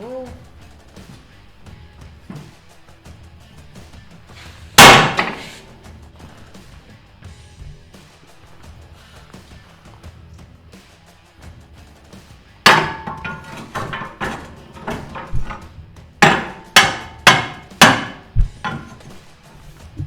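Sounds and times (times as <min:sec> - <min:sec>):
hammer striking steel: 0:04.4 - 0:05.8, 0:12.7 - 0:19.5.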